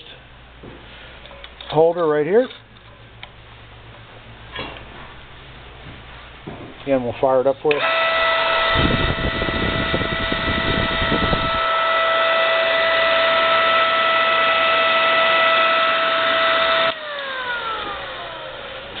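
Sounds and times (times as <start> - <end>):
grinder motor whining: 7.7 - 19.0.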